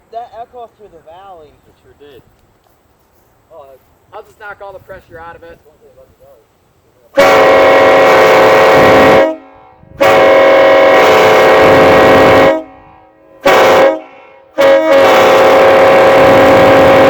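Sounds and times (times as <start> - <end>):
locomotive air horn blasts: 7.2 - 17.0.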